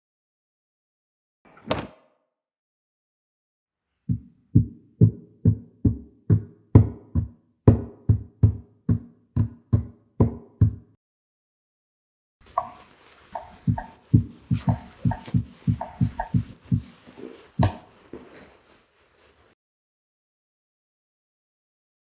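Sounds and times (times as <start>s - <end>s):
dull thumps: 13.4s - 18.4s.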